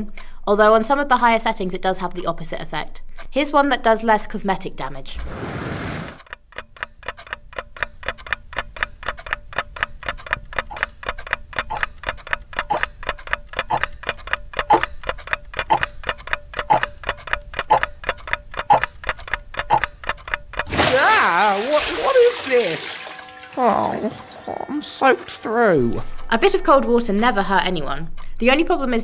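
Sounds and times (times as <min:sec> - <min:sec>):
stronger clock tick: 0:06.2 - 0:20.9
clock ticking fast: 0:06.2 - 0:27.7.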